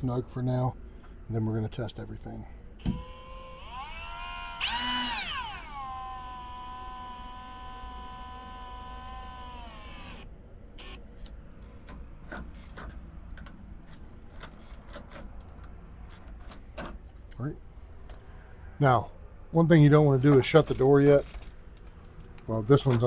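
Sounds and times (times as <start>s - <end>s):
cordless drill whine: 2.8s - 11.0s.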